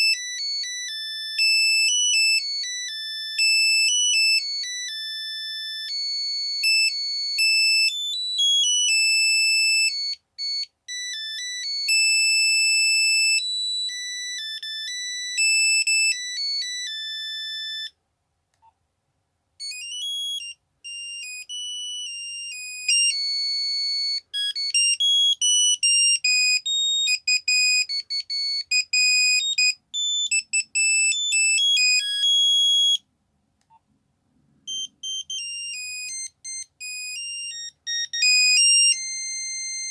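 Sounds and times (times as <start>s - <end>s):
monophonic ringtone melodies: 0.0s - 17.9s, 19.6s - 33.0s, 34.7s - 39.9s.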